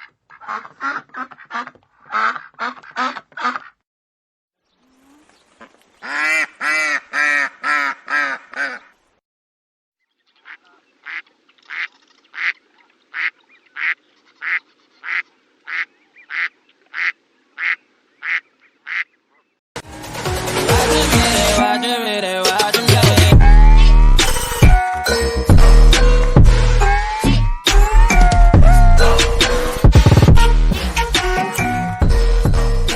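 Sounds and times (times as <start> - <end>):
ducks quacking: 0.0 - 3.8, 5.6 - 8.9, 10.4 - 19.4.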